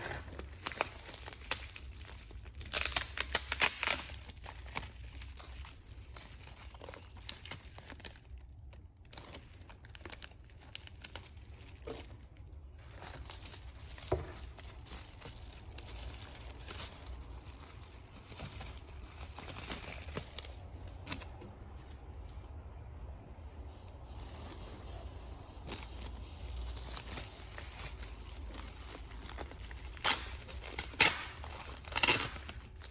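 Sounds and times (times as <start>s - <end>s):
packaging crinkling and tearing: 0.0s - 22.6s, 23.8s - 32.9s
low steady hum: 0.0s - 32.9s.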